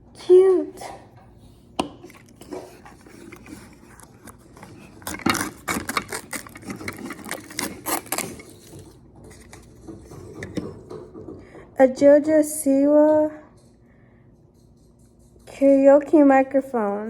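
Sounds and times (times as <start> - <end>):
packaging rustling and scraping: 1.6 - 10.8
packaging click: 3.4 - 8.7.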